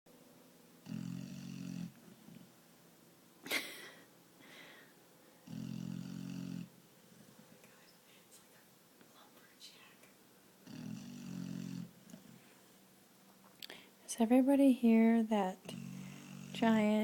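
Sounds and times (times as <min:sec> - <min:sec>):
puppy snoring: 0:00.8 - 0:02.4, 0:05.4 - 0:06.8, 0:10.6 - 0:12.3, 0:15.6 - 0:17.0.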